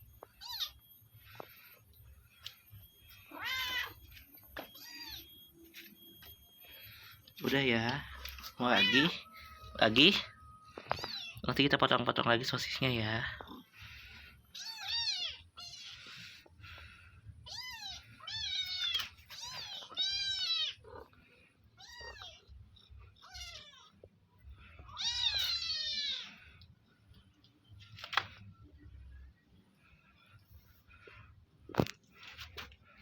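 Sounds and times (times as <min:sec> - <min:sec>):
cats meowing: 0:00.1 - 0:01.9, 0:02.6 - 0:07.4, 0:08.1 - 0:11.5, 0:13.4 - 0:26.7.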